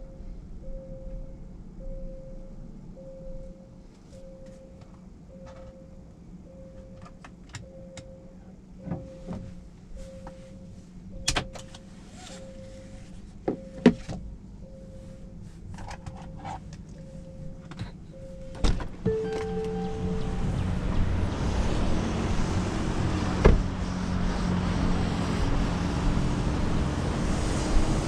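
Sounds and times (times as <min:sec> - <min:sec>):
car warning chime beeping: 0:00.0 - 0:07.0, 0:07.6 - 0:09.3, 0:10.0 - 0:11.7, 0:12.3 - 0:15.4, 0:16.2 - 0:21.4.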